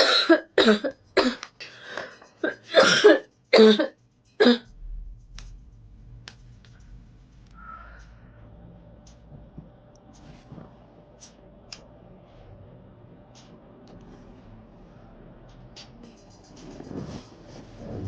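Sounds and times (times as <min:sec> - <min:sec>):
woman coughing harshly: 0:00.0 - 0:01.5, 0:02.4 - 0:04.7.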